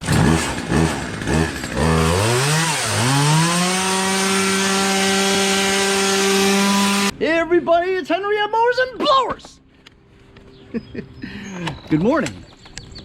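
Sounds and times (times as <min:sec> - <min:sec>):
small engine revving: 0:00.0 - 0:07.1.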